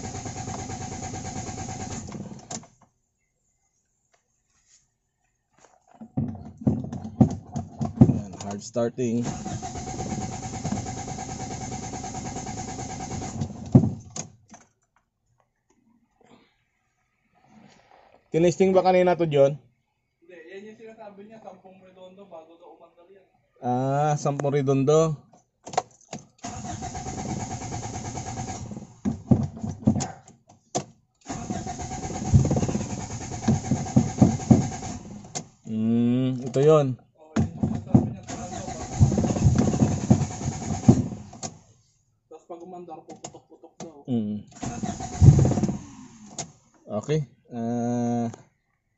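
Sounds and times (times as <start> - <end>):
engine clunk: 0.0 - 2.8, 6.8 - 14.3, 31.3 - 35.6, 37.4 - 41.6, 44.6 - 46.6
engine cranking on starter: 0.0 - 2.8, 8.3 - 14.3, 26.4 - 29.3, 31.2 - 35.6, 38.1 - 41.7, 44.5 - 46.7
heavy thumps: 32.2 - 35.3, 38.9 - 41.4.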